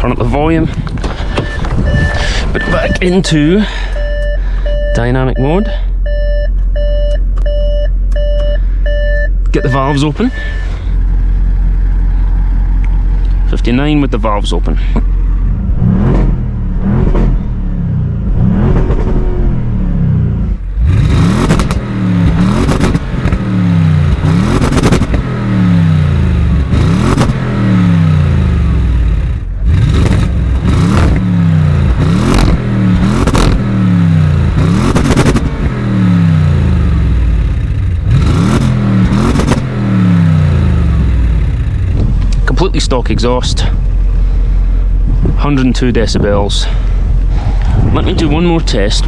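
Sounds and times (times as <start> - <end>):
car engine revving: 9.4 - 45.6.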